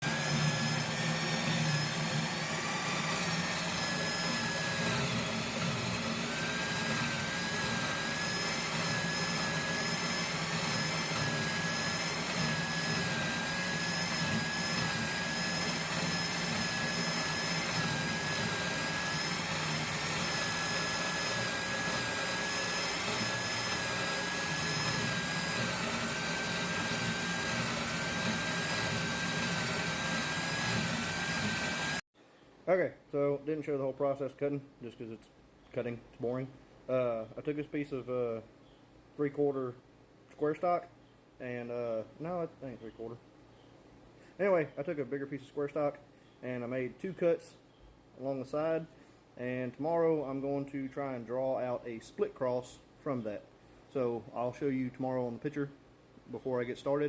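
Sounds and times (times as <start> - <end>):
power tool cutting steel: 0.0 - 32.0.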